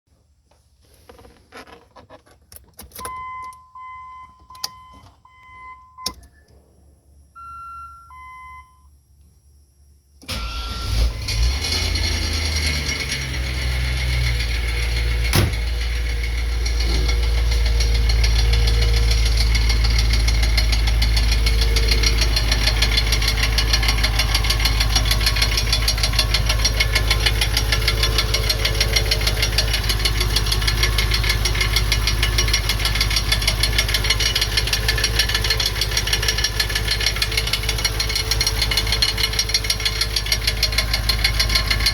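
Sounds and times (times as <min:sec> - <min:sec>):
car warning chimes beeping: 0:03.0 - 0:06.4, 0:07.4 - 0:08.9
car engine starting and idling: 0:10.2 - 0:41.9.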